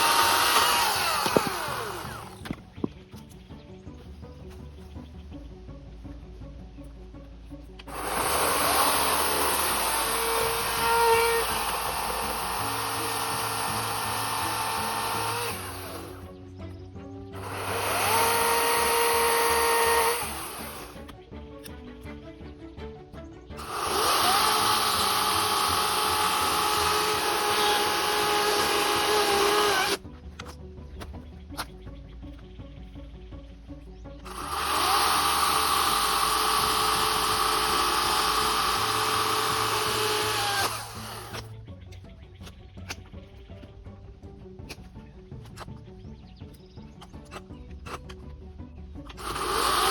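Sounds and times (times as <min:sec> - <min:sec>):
electric chainsaw whining: 0:00.0 - 0:02.6, 0:07.8 - 0:16.3, 0:17.4 - 0:21.8, 0:23.6 - 0:30.0, 0:34.2 - 0:41.5, 0:49.1 - 0:49.9.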